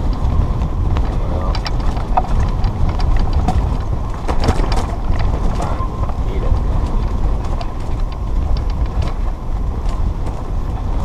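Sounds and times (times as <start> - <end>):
strong wind buffeting microphone: 0.0 - 11.0.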